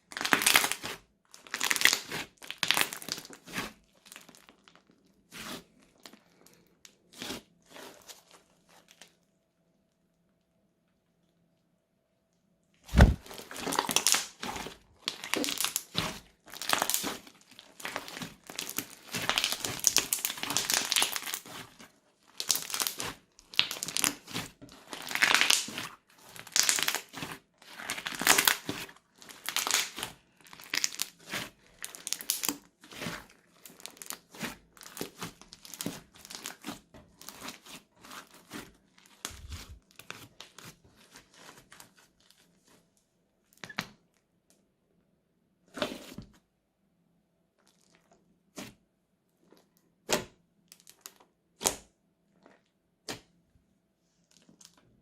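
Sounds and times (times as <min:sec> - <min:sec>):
crunchy slime squeezed by hand: 0:00.1 - 0:04.7, 0:12.9 - 0:21.8, 0:22.4 - 0:42.0.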